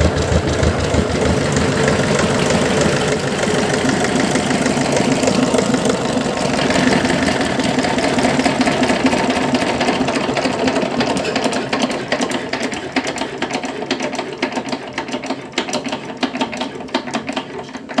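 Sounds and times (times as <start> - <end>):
diesel engine winding down: 0.0 - 12.7.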